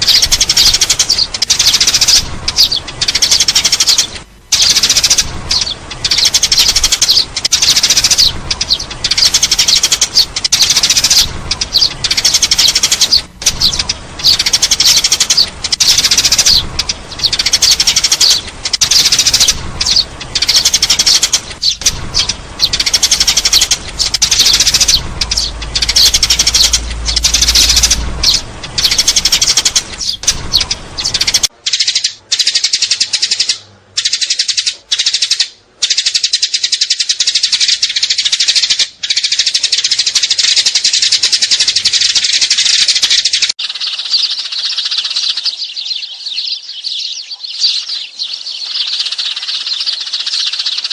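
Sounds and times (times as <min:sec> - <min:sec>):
low hum: 0:00.0 - 0:31.6
sparrows chirping: 0:00.0 - 0:50.9.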